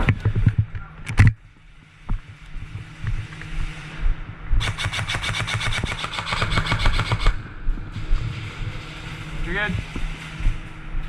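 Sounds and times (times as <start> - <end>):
low rumbling: 0.0 - 4.8, 7.2 - 11.0
airsoft gun full-auto burst: 4.6 - 7.4.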